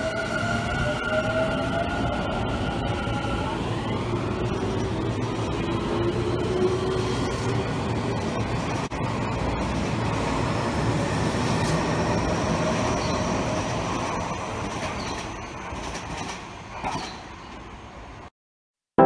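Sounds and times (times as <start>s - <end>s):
train rumbling on rails: 0.0s - 18.3s.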